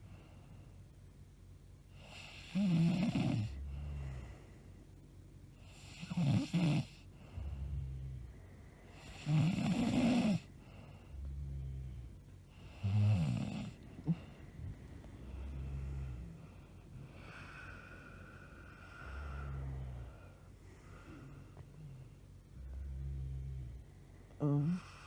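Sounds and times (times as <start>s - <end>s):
woman snoring: 2.0s - 4.4s, 5.6s - 8.3s, 8.9s - 14.4s, 15.2s - 22.0s, 22.6s - 25.0s.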